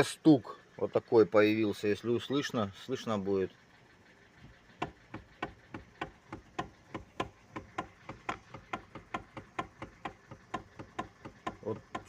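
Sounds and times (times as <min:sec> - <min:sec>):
steering column knocking: 0:04.5 - 0:12.0.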